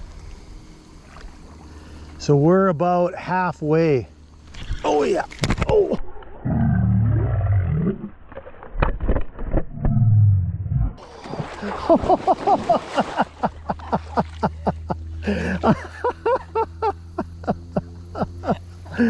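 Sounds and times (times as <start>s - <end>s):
low steady hum: 0.0s - 19.0s
people laughing hard: 11.6s - 19.0s.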